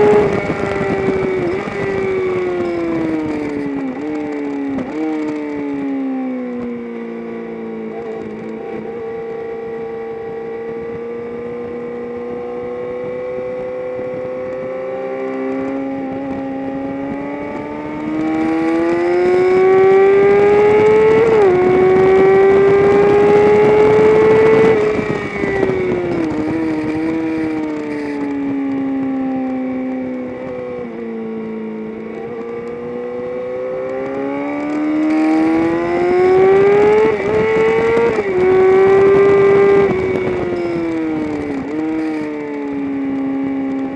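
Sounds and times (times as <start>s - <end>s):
race car engine accelerating: 10.3s - 28.2s, 32.0s - 42.2s.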